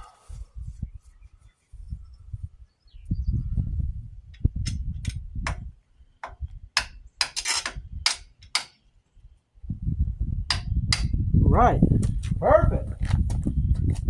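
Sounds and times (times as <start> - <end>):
low rumble: 3.1 - 5.8, 9.6 - 14.0
hammer tapping metal bolt: 6.2 - 8.8.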